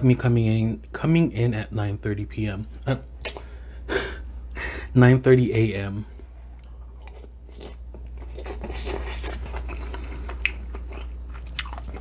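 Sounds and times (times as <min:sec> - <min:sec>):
steady low hum: 0:00.0 - 0:12.0
close chewing: 0:06.5 - 0:12.0.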